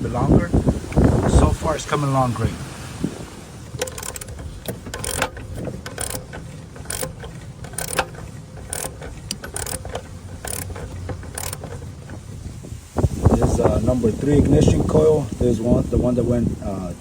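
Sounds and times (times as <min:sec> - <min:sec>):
hand ratchet clicking: 0:03.7 - 0:12.3.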